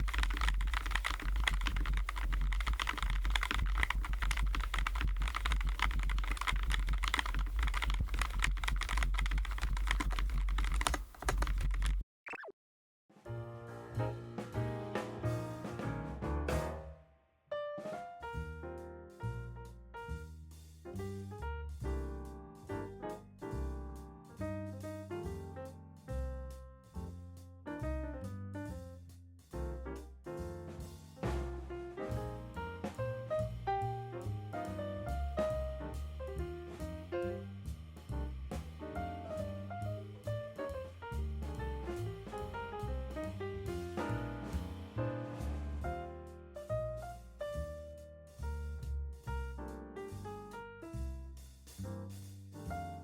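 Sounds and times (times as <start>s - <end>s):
fast typing on mechanical keyboard: 0.0s - 12.0s
jazzy piano and bass music: 0.0s - 12.0s, 13.3s - 53.0s.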